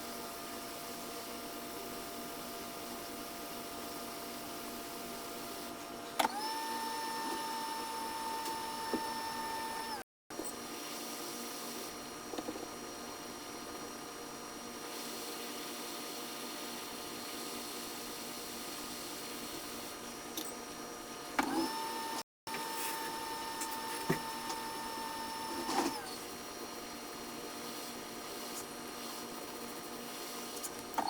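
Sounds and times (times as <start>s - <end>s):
small electric motor whine: 4.8s - 10.0s, 21.4s - 26.3s.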